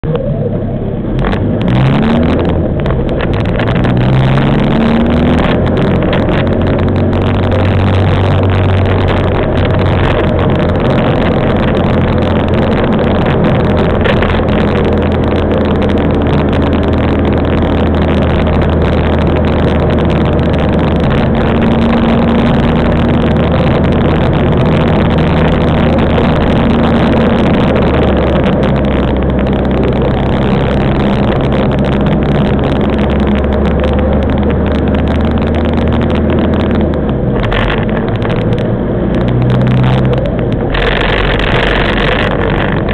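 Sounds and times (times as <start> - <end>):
car engine pulling: 0.0 - 42.9.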